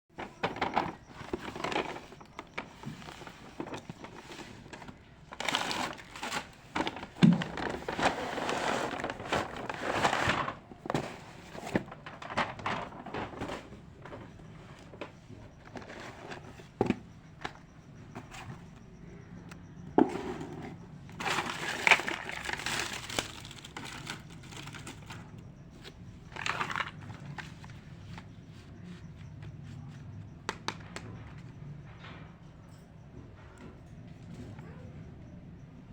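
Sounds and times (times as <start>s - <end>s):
plastic packaging crinkling: 0.2s - 14.3s, 21.1s - 25.4s, 26.3s - 27.8s.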